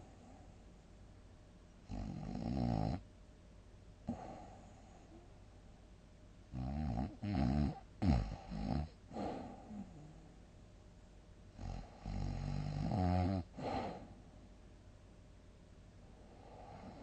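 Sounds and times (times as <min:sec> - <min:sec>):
person snoring loudly: 0:11.6 - 0:13.8.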